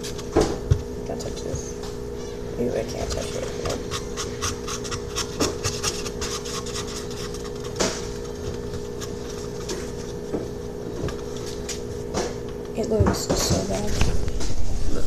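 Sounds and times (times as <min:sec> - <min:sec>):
steady hum: 0:00.0 - 0:15.0
slime stirring scrapes: 0:02.1 - 0:12.1.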